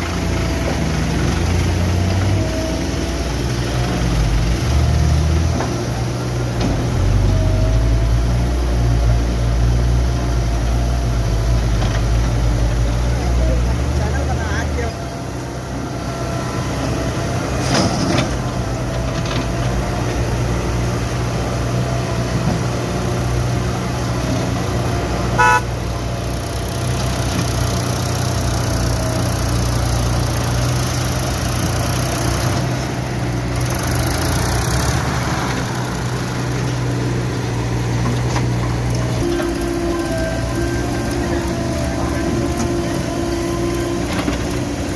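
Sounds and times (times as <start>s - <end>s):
diesel engine under load: 0.0s - 44.9s
horn toot: 25.4s - 25.8s.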